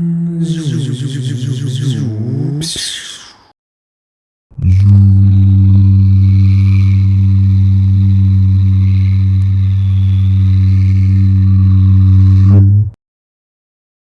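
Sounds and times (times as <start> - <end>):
motorcycle engine droning: 0.0 - 2.6.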